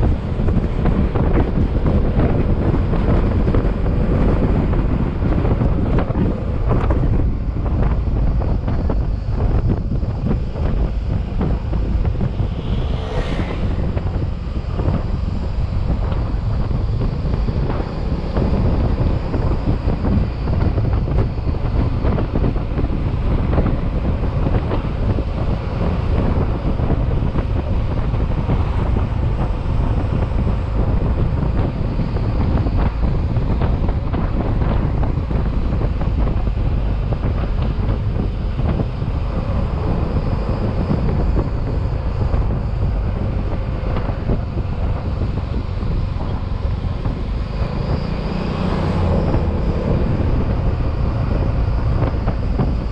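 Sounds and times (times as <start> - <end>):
road noise: 0.0 - 52.9
wind rushing over microphone: 0.0 - 52.9.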